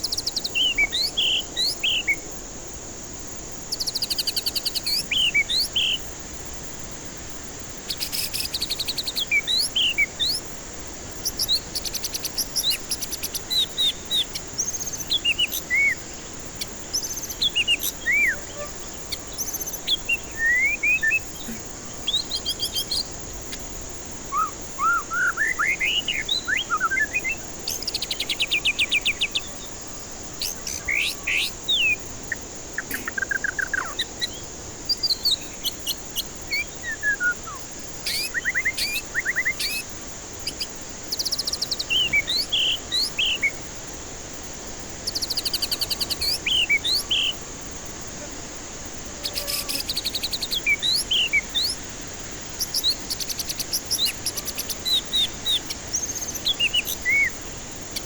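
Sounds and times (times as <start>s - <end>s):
bird whistling song: 0.0s - 2.2s, 3.7s - 6.0s, 7.9s - 10.5s, 11.2s - 23.6s, 24.3s - 29.7s, 30.4s - 43.6s, 45.0s - 47.4s, 49.2s - 51.8s, 52.5s - 58.0s
bird rattling chattering trills: 32.8s - 34.2s, 52.6s - 58.0s.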